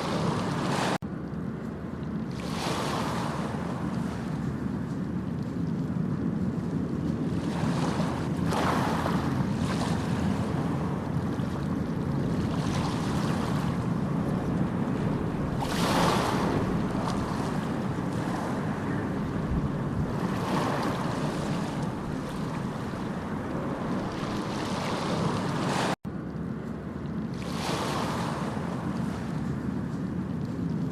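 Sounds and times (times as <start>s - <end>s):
sea waves breaking: 0.0s - 1.0s, 2.1s - 26.0s, 26.8s - 30.9s.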